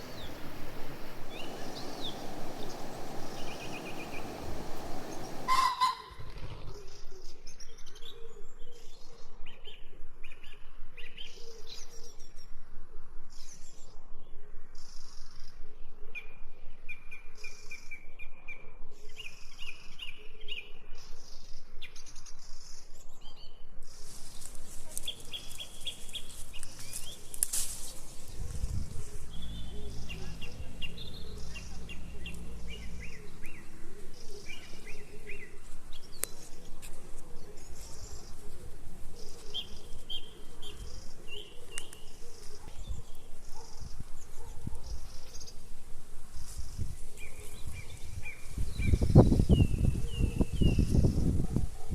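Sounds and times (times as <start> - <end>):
songbirds chirping trills: 0.0 - 6.1, 28.0 - 44.3
outdoor background noise: 0.0 - 51.9.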